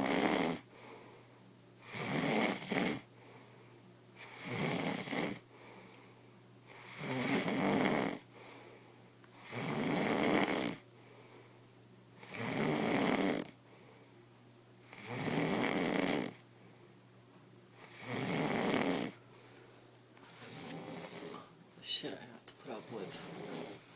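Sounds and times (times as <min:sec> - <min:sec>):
person snoring: 0:00.0 - 0:00.6, 0:01.8 - 0:03.1, 0:04.2 - 0:05.4, 0:06.7 - 0:08.2, 0:09.4 - 0:10.8, 0:12.2 - 0:13.6, 0:14.9 - 0:16.4, 0:17.8 - 0:19.2, 0:20.4 - 0:21.5, 0:22.8 - 0:23.8.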